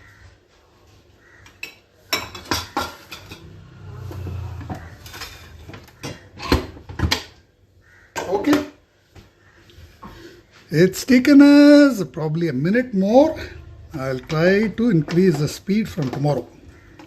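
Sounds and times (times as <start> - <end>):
spoons clinking on cooking vessels: 1.5 - 3.6.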